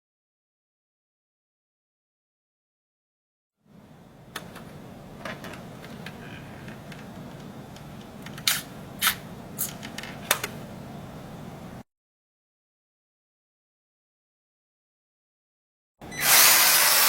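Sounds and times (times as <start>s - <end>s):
small electric motors humming: 16.0s - 17.0s.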